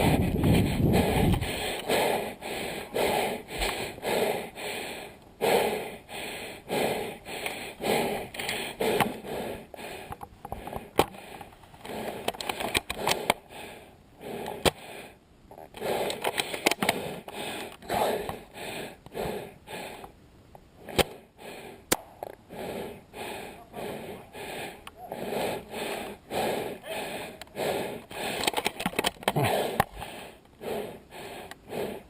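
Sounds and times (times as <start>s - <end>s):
person breathing hard: 0.0s - 20.2s, 20.8s - 32.0s
sharp clicks: 10.1s - 13.4s, 15.7s - 18.4s, 27.4s - 30.6s.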